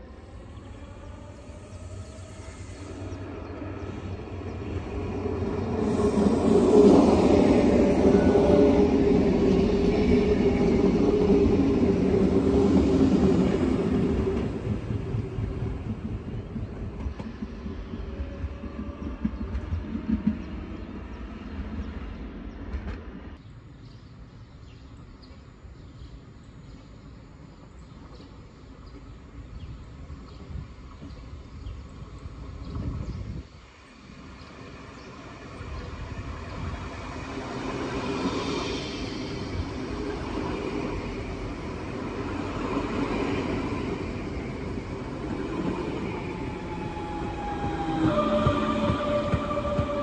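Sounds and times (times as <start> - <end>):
electric train passing: 0.0 - 23.7, 27.0 - 50.0.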